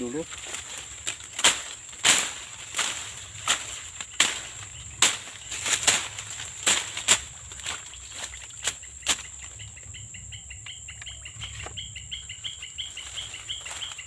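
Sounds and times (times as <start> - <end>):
machete slashing vegetation: 0.3 - 9.2
repeated chirping call: 8.6 - 14.0.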